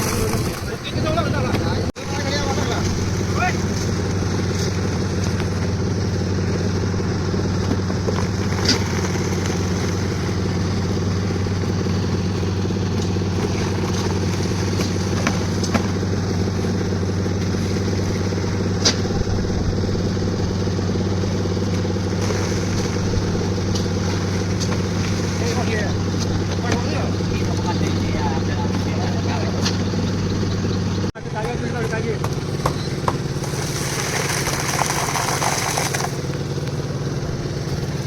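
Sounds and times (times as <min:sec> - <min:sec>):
concrete mixer engine running: 0:00.0 - 0:38.0
sharp knocks: 0:31.4 - 0:33.4.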